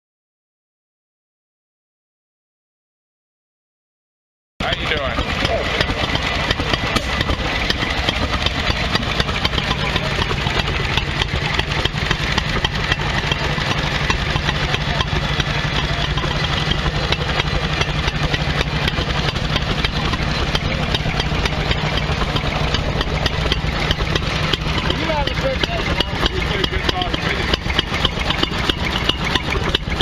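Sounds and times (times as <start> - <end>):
stationary engines clattering: 4.6 - 30.0.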